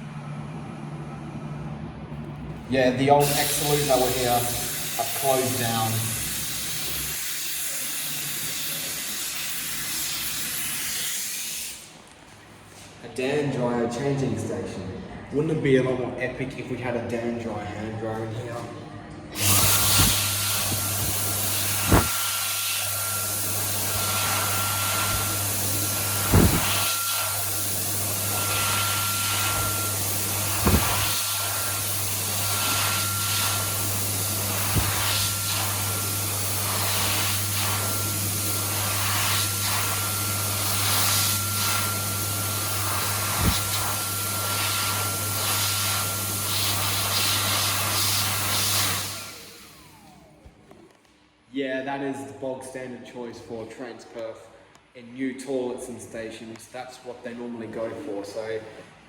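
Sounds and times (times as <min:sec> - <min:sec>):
hand dryer running: 0:03.1 - 0:11.8, 0:19.4 - 0:50.4.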